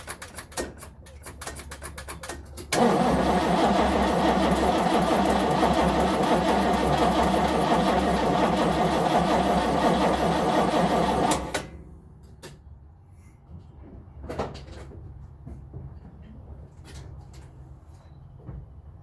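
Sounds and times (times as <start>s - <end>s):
starter motor cranking: 2.7s - 11.7s.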